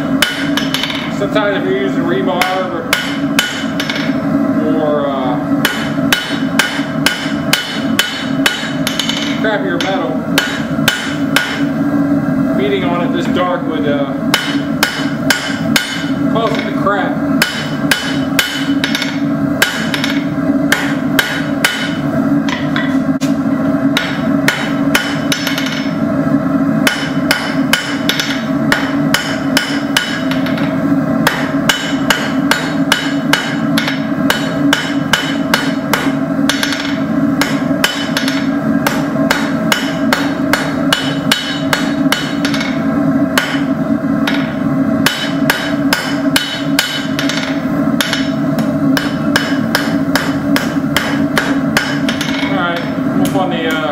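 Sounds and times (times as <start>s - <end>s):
steady low hum: 0.0s - 53.9s
hammer striking steel on anvil: 0.2s - 1.1s, 2.4s - 4.2s, 5.6s - 11.7s, 14.3s - 16.8s, 17.4s - 23.3s, 23.9s - 26.0s, 26.8s - 42.8s, 43.4s - 53.9s.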